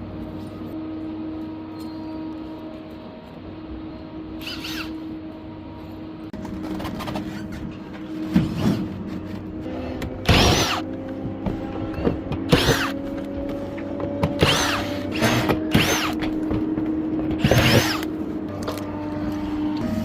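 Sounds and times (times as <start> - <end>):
power drill whirring: 4.4 - 5.0, 10.2 - 10.8, 12.5 - 13.0, 14.4 - 16.2, 17.4 - 18.1.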